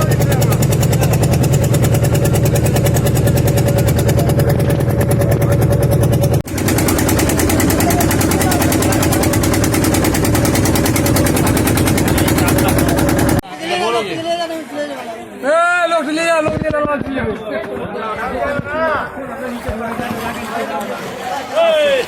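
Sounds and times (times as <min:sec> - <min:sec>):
engine chugging: 0:00.0 - 0:13.4.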